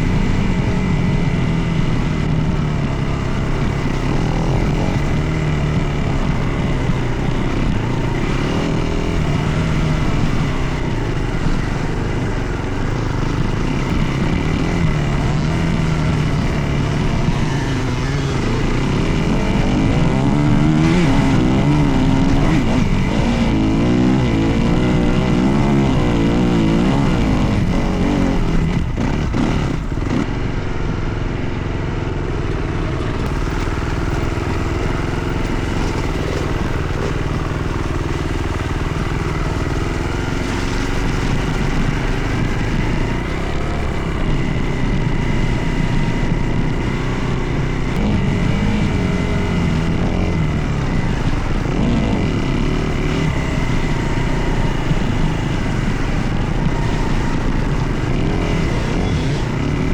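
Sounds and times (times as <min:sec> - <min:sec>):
dirt bike engine revving: 0:00.0 - 0:59.9.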